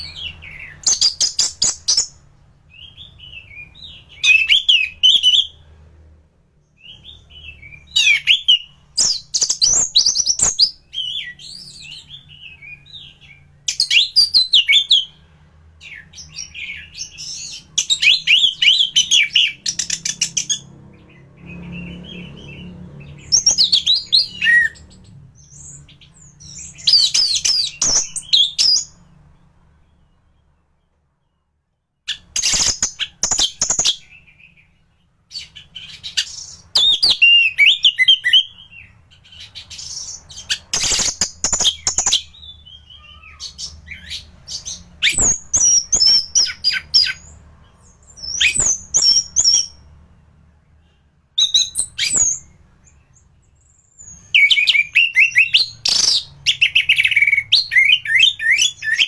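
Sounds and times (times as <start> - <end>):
thrush singing whistles and trills: 2.8 - 5.6, 15.8 - 29.1, 35.3 - 49.8, 51.4 - 59.0.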